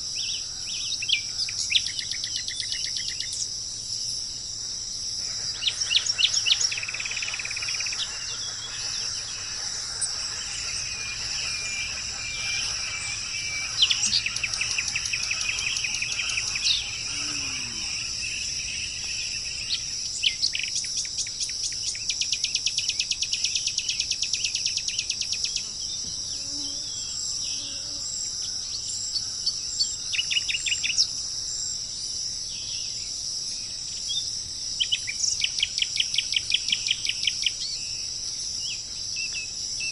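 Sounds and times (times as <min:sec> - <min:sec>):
high-pitched insect chorus: 0:00.0 - 0:39.9
birds calling: 0:05.2 - 0:22.2.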